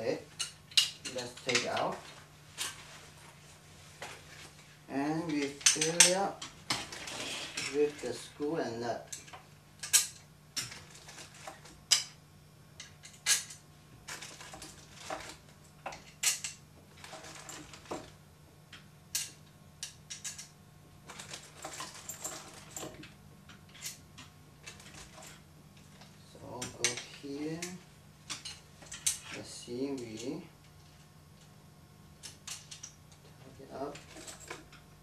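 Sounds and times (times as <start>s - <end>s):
screws clinking on metal plate: 5.3s - 8.0s, 33.6s - 34.8s.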